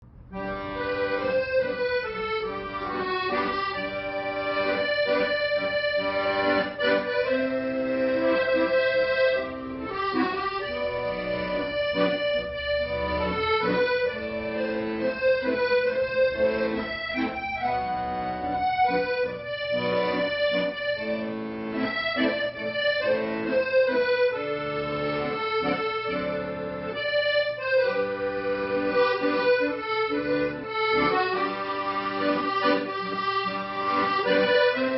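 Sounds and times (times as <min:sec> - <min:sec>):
accordion melody: 0:00.0 - 0:34.9.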